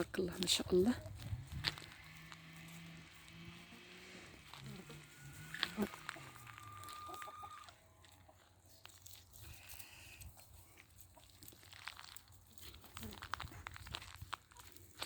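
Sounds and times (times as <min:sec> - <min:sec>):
small clicks and crunches: 0:00.4 - 0:03.4, 0:04.3 - 0:15.0
chicken high call: 0:04.6 - 0:08.4.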